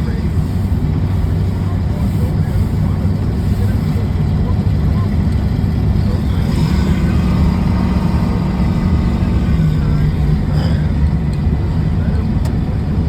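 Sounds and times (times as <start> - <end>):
vehicle engine and road noise: 0.0 - 13.0.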